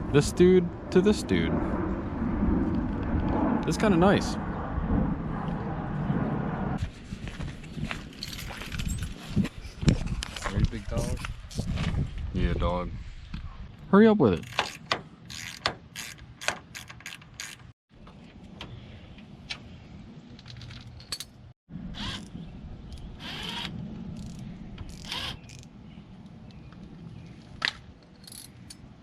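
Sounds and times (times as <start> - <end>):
metallic clicks and scrapes: 14.4 - 17.7, 27.4 - 28.9.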